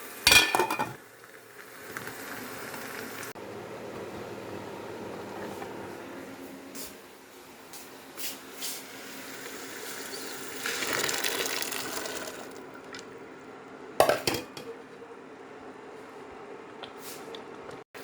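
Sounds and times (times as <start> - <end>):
water pouring: 9.4 - 13.1.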